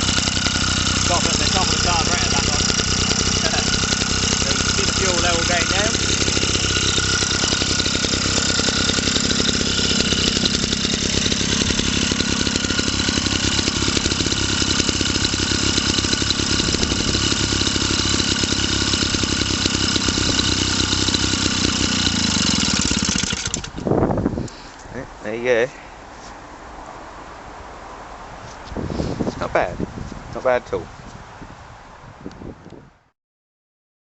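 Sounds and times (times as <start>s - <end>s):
stationary engine running: 0.0s - 23.8s.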